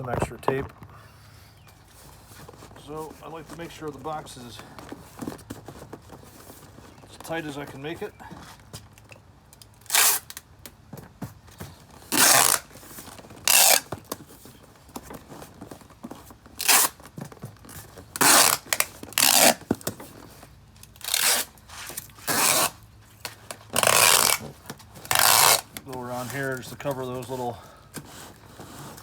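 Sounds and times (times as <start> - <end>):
cardboard box rustling: 1.6 - 9.0, 10.8 - 29.0
packing tape ripping off roll: 9.6 - 10.7, 12.0 - 26.8.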